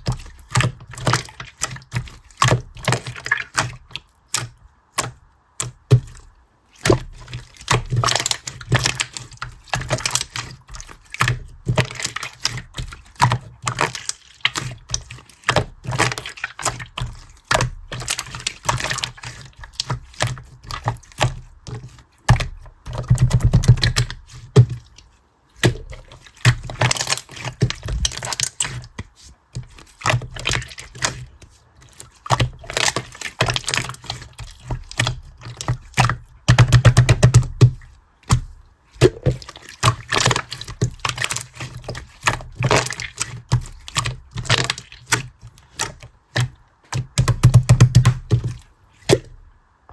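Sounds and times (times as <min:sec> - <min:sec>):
rapid clicking and tapping: 0:45.8 - 0:48.6.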